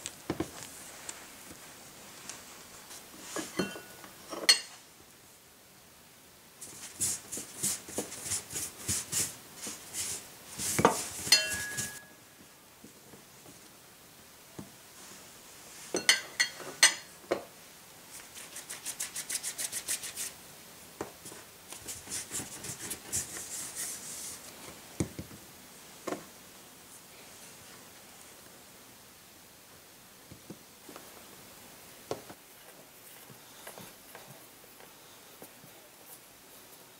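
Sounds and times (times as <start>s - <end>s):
utensils clinking: 3.4s - 4.8s, 11.2s - 12.1s, 16.0s - 17.1s.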